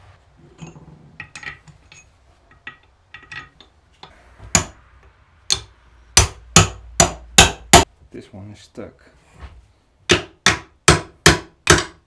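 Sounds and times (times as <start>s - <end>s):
small hardware clinking: 0.6s - 4.2s.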